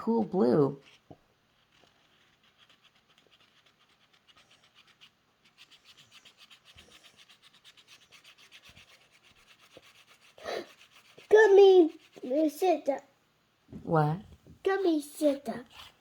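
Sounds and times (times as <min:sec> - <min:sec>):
chalk scribbling on fabric: 0:00.7 - 0:12.9, 0:14.8 - 0:16.0.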